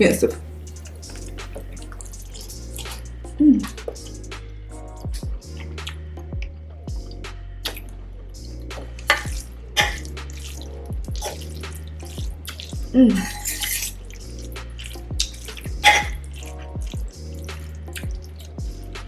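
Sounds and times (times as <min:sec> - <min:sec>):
background music with deep bass: 0:00.0 - 0:19.0
noodles slurped and chewed: 0:09.1 - 0:14.2.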